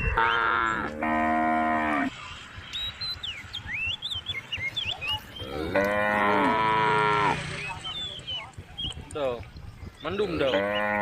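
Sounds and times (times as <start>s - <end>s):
small birds chirping: 0.0s - 11.0s
cows mooing: 0.1s - 2.1s, 5.4s - 7.8s, 10.4s - 11.0s.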